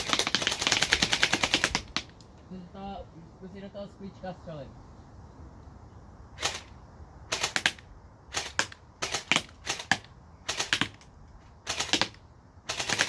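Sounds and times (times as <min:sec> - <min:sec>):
airsoft gun firing: 0:00.0 - 0:02.1, 0:06.4 - 0:06.7, 0:07.3 - 0:11.0, 0:11.6 - 0:13.0.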